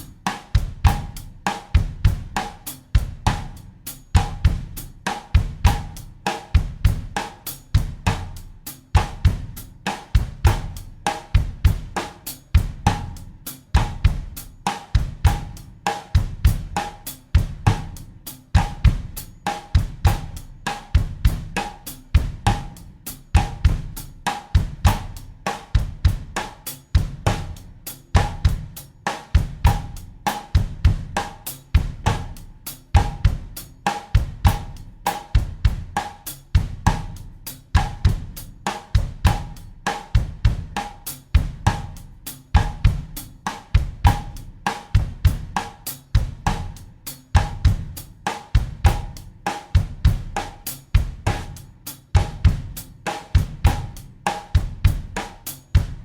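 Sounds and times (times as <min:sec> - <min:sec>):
cymbal or hi-hat: 0:00.0 - 0:01.6
bass drum: 0:00.0 - 0:28.8, 0:29.4 - 0:56.0.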